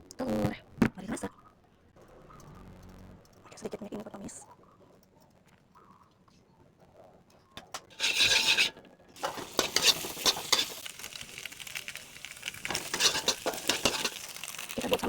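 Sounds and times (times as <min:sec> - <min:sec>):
spatula scraping pan: 0:07.8 - 0:11.4, 0:12.4 - 0:14.6
food sizzling in hot oil: 0:07.9 - 0:15.0.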